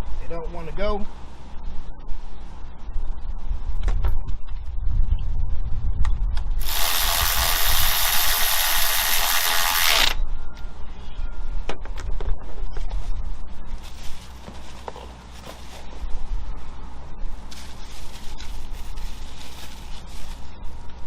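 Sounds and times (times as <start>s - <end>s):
steady low rumble: 0.0s - 6.7s, 10.2s - 21.0s
ratchet wrench clicking: 6.6s - 10.2s.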